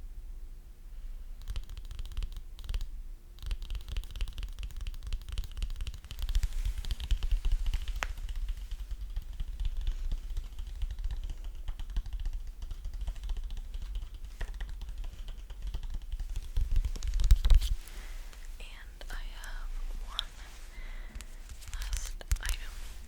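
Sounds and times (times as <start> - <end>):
rapid tapping and clicking: 1.4 - 17.7.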